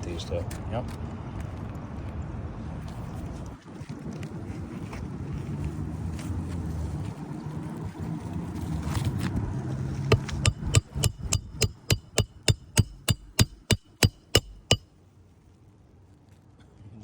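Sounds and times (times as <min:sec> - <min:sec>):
hammer striking nail: 0:10.1 - 0:14.8.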